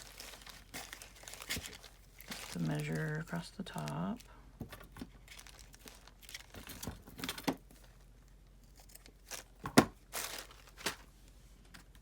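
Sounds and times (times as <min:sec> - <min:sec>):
paper rustling: 0:00.0 - 0:04.0, 0:08.8 - 0:11.1.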